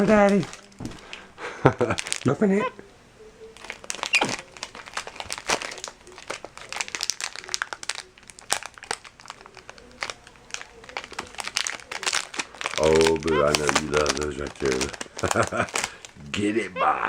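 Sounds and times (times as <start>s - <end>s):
wrapper crinkling: 0.0s - 2.6s, 3.4s - 16.2s.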